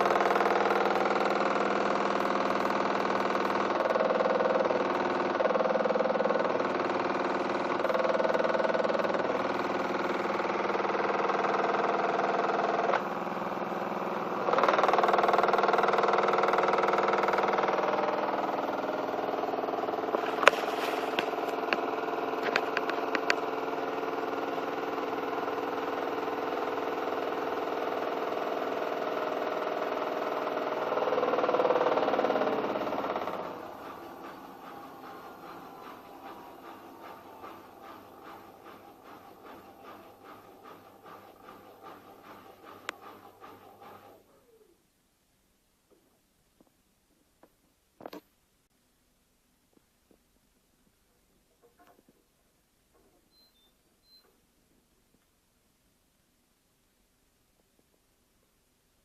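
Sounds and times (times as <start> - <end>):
washing machine vibrating hum: 0.0 - 44.7.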